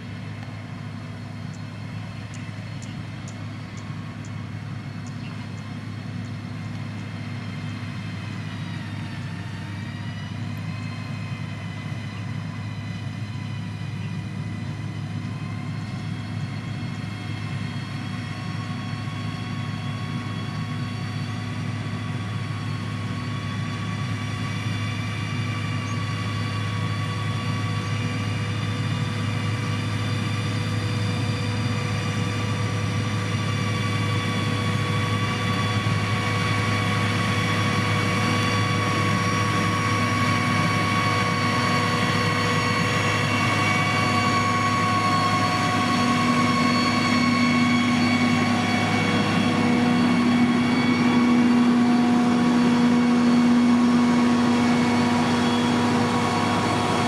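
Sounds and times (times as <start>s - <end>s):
diesel engine drone: 0.0s - 57.0s
steady whine: 0.0s - 57.0s.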